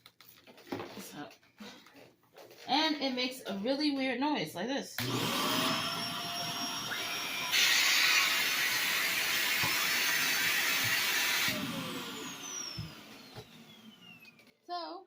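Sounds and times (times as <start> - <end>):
vacuum cleaner hissing rush: 5.0 - 14.3
vacuum cleaner motor whining: 5.0 - 14.5.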